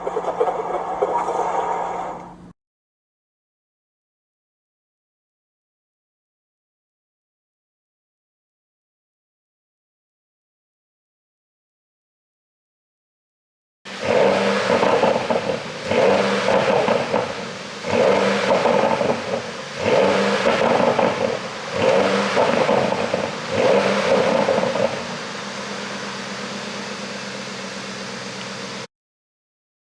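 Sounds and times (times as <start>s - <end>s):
car engine idling: 0.0s - 2.5s, 13.9s - 28.9s
exhaust popping and crackling: 13.9s - 28.8s
car engine revving: 13.9s - 28.9s.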